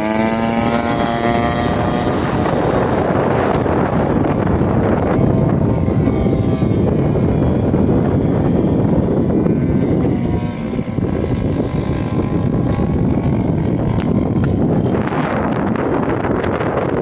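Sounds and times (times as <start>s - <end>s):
distant model plane engine drone: 0.0s - 17.0s
wind buffeting microphone: 0.0s - 17.0s.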